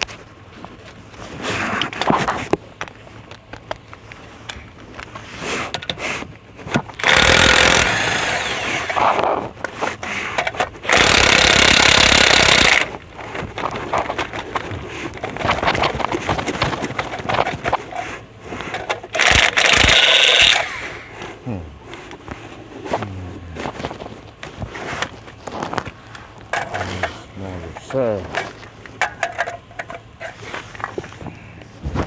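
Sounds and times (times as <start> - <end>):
impact wrench hammering: 10.9 - 12.9
metal clinks and handling noise: 26.4 - 31.0.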